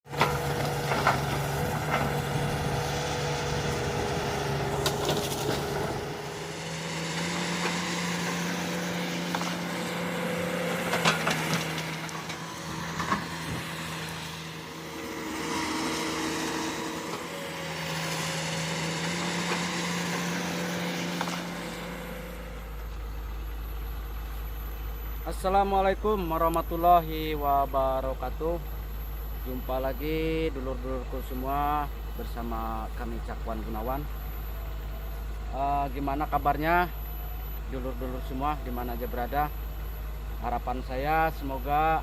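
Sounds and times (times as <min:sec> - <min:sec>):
digging knocks and clanks: 0:00.1 - 0:02.4, 0:10.4 - 0:13.7
excavator diesel engine running: 0:00.1 - 0:42.0.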